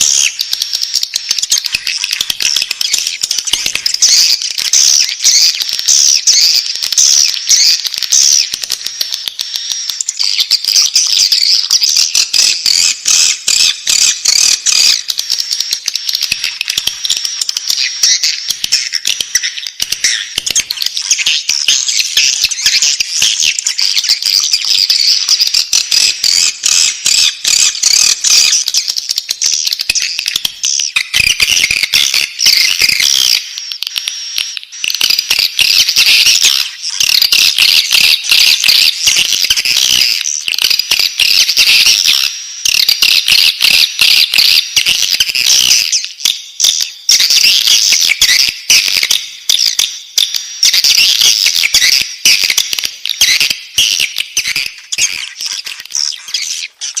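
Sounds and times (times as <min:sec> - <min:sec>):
bird chicks chirping: 0:00.0 - 0:57.0.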